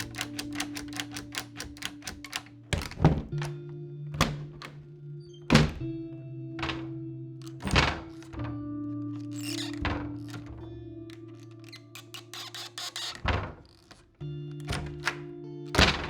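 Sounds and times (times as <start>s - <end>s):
music with ticking beat: 0.0s - 5.9s.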